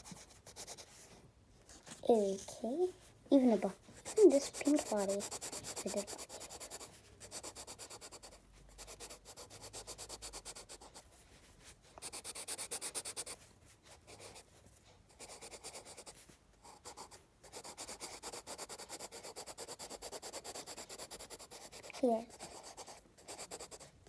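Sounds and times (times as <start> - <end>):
colouring strokes on paper: 0.0 - 24.0.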